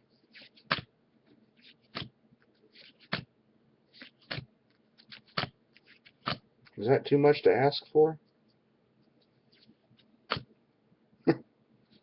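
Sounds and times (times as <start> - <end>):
cards sliding and rustling: 0.2 - 3.3, 3.9 - 6.8, 9.0 - 10.5
trading cards snapping: 1.7 - 2.1, 4.0 - 6.4, 10.3 - 10.5.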